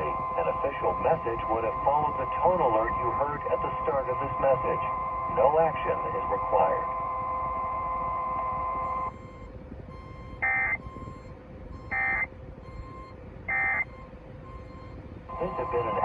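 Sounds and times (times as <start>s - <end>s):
tone-laden hiss: 0.0s - 9.1s
faint steady whine: 0.0s - 16.0s
warbling data tones: 0.0s - 16.0s.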